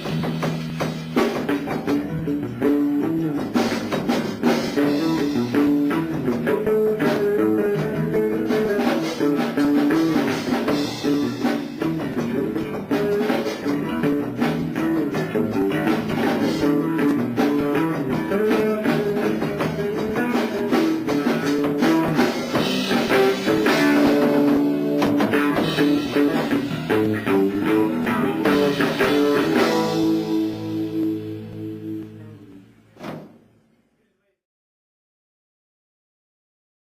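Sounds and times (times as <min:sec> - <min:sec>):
rock band playing: 0:00.0 - 0:33.2
held guitar chord ringing: 0:28.0 - 0:32.6.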